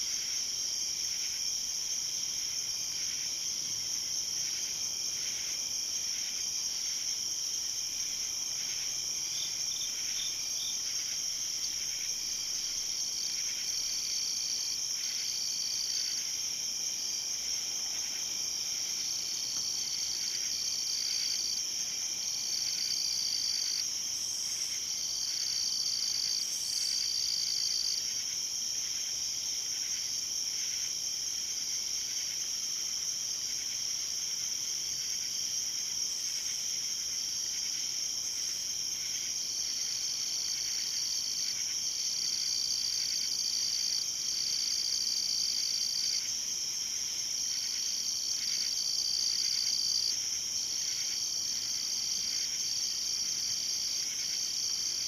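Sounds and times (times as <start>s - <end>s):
high-pitched insect trill: 4.4s - 29.1s.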